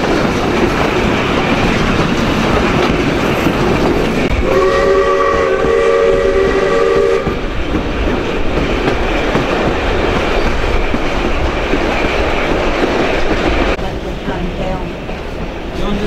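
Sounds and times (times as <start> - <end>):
train rumble and wheel clatter: 0.0 - 16.0
steam locomotive whistle: 4.4 - 7.4.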